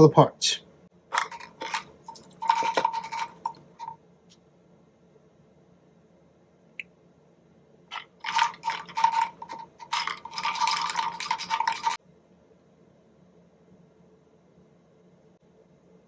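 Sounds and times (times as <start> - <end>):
small metal parts rattling in container: 1.1 - 4.0, 7.9 - 12.0
container ringing: 1.2 - 3.9, 7.9 - 12.0.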